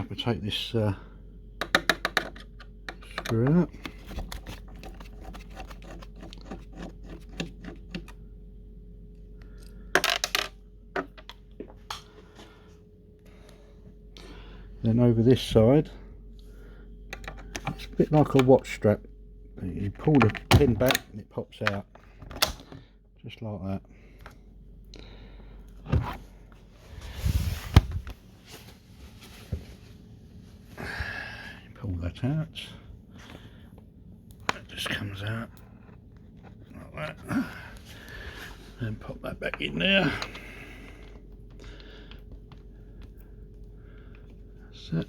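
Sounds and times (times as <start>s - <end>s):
steady low hum: 0.0s - 45.0s
knock on plastic parts: 1.6s - 3.3s
screwdriver clicking and scraping: 1.6s - 8.2s
small hard parts clattering: 10.0s - 11.3s.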